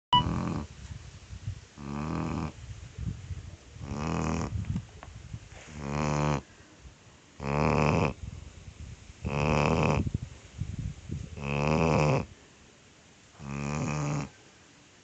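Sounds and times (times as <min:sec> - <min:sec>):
short beep: 0:00.1 - 0:00.3
puppy snoring: 0:00.1 - 0:00.7, 0:01.8 - 0:02.6, 0:03.8 - 0:04.6, 0:05.7 - 0:06.5, 0:07.4 - 0:08.2, 0:09.2 - 0:10.1, 0:11.3 - 0:12.3, 0:13.4 - 0:14.4.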